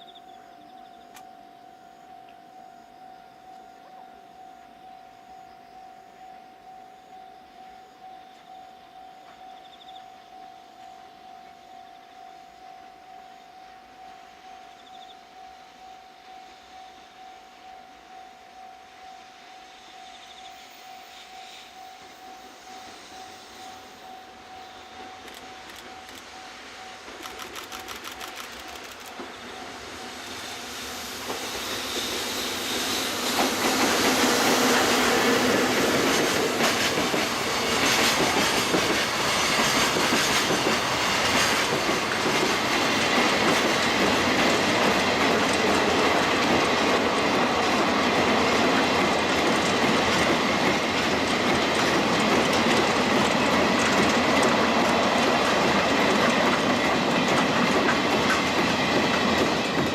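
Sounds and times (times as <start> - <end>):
freight train wheels clacking: 25.0 - 59.9.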